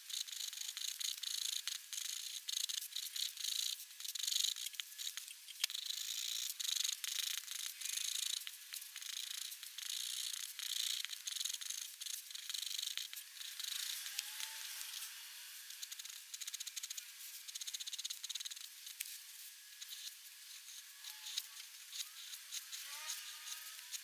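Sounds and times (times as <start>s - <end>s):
pen nib scratching paper: 15.7s - 19.0s, 19.8s - 24.0s.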